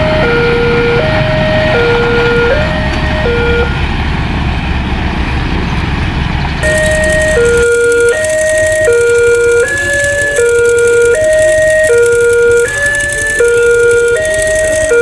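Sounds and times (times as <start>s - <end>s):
loud low rumble: 0.0s - 7.7s
two-tone crossing warning siren: 0.0s - 15.0s.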